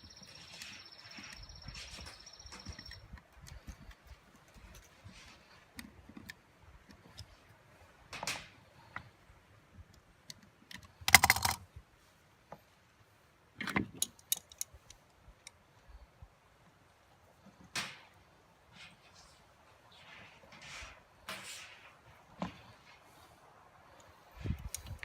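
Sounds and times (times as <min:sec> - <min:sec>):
metal tools clicking and clinking: 0:11.1 - 0:11.6, 0:14.0 - 0:14.8.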